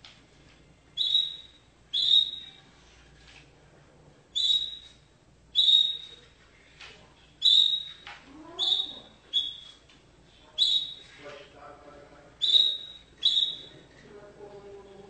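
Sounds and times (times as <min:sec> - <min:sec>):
canary high-pitched notes: 0:08.6 - 0:09.7.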